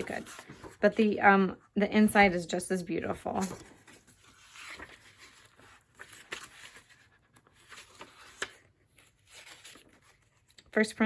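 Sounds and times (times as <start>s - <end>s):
book pages rustling: 0.0s - 1.0s, 3.0s - 10.8s.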